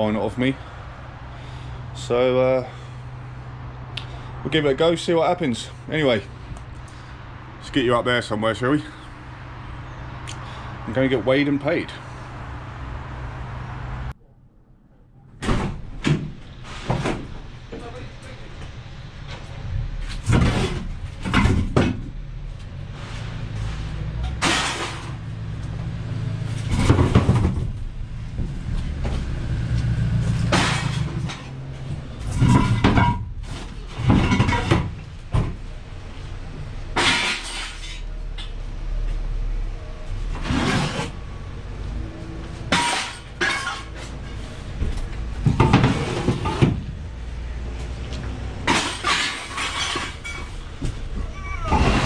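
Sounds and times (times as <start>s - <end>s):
low steady rumble: 0.0s - 52.0s
scrap metal crashing and clanking: 19.3s - 29.4s, 30.0s - 35.7s, 36.9s - 38.2s, 40.3s - 41.2s, 42.6s - 44.6s, 45.4s - 47.0s, 48.6s - 52.0s.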